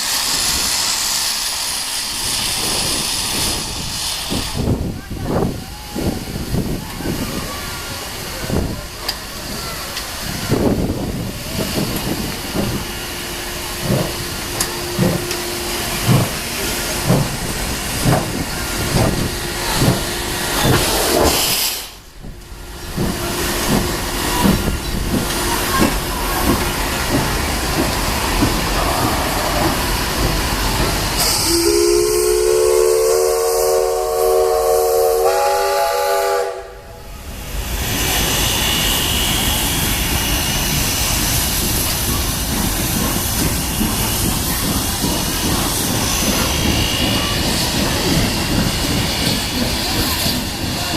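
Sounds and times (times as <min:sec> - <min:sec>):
steady steam hiss: 0:00.0 - 0:50.9
steam locomotive exhaust chuffs: 0:00.0 - 0:50.9
steam whistle: 0:31.2 - 0:37.0.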